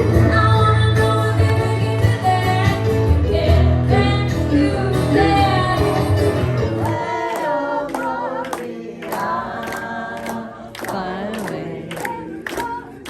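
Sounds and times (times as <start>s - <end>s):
band with bass: 0.0s - 7.0s
voices singing together: 4.7s - 13.0s
hand claps: 6.8s - 13.0s.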